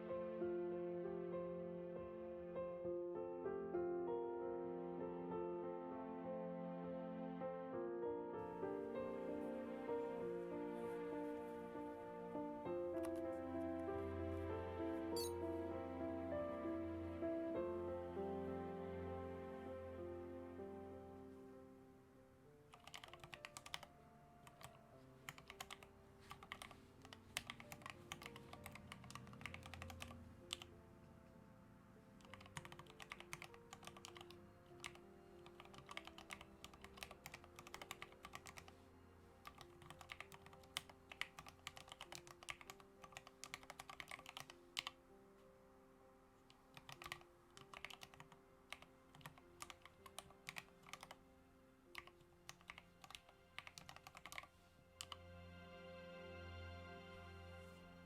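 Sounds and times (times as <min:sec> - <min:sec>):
soft background music: 0:00.0 - 0:58.0
mechanical keyboard key clacks: 0:39.5 - 0:44.9.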